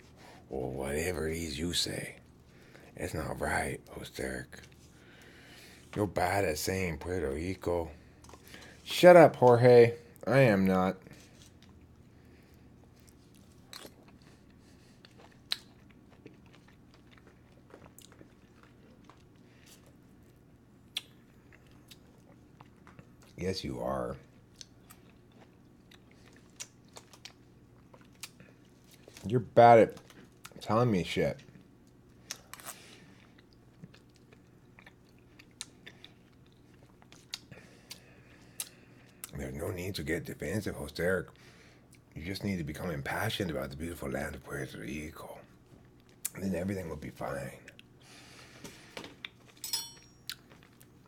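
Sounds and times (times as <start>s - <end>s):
chewing and mouth sounds: 11.1s - 23.4s, 24.2s - 29.2s, 31.4s - 39.4s.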